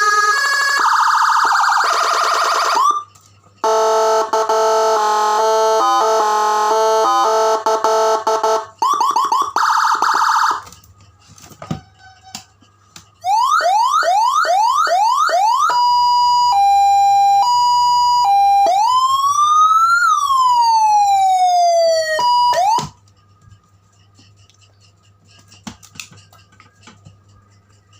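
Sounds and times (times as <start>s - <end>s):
electronic siren tones: 0.0s - 10.6s, 13.2s - 23.0s.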